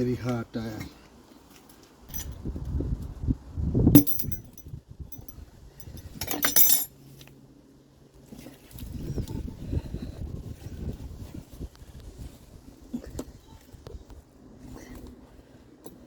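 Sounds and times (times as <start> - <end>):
metal tools clinking on wheel rim: 2.1 - 2.4, 4.0 - 6.9.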